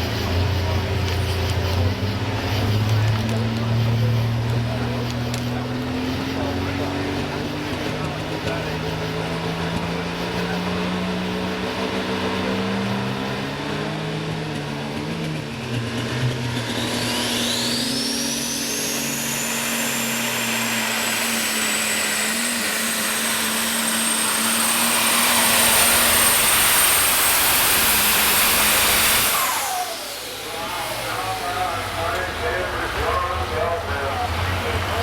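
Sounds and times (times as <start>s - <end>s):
tractor diesel engine running: 0.0s - 35.0s
high turbo whistle: 16.5s - 32.0s.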